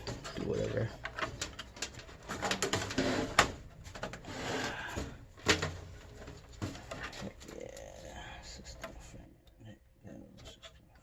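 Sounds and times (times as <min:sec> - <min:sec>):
computer parts clicking and knocking: 0:00.0 - 0:04.3, 0:04.9 - 0:07.6
rustling: 0:00.0 - 0:08.0.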